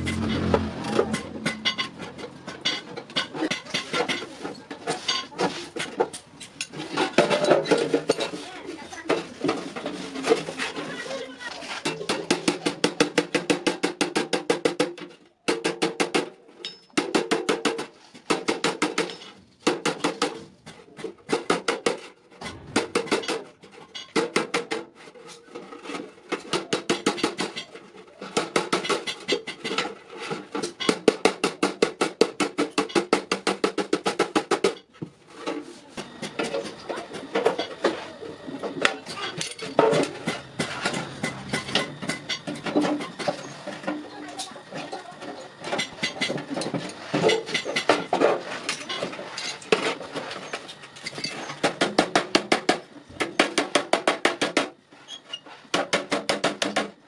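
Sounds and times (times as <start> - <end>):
hammer striking hot iron: 0.0 - 4.2, 22.4 - 23.5, 38.8 - 44.0.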